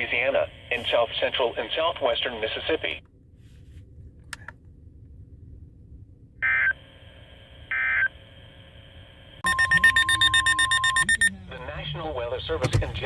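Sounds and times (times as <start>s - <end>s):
electronic data tone bursts: 9.4s - 11.4s
pulsing electronic alert sound: 9.4s - 11.6s.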